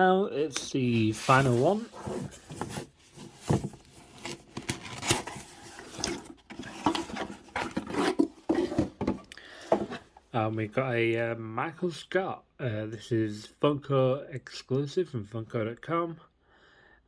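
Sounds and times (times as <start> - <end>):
cardboard and plastic rustling: 0.9 - 10.2.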